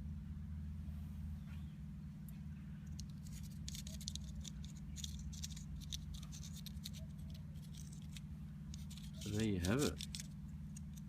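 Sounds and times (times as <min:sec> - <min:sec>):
steady low hum: 0:00.0 - 0:11.0
padlock parts clicking and rattling: 0:02.9 - 0:11.0.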